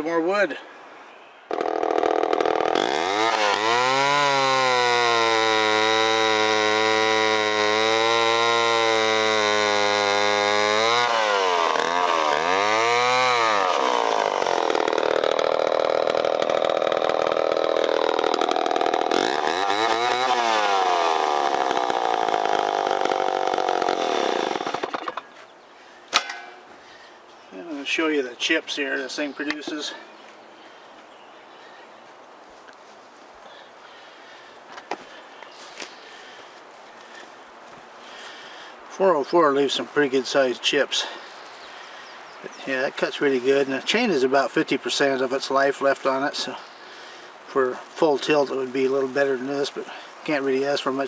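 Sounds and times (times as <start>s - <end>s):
chainsaw running at high revs: 1.5s - 25.3s, 42.6s - 51.0s.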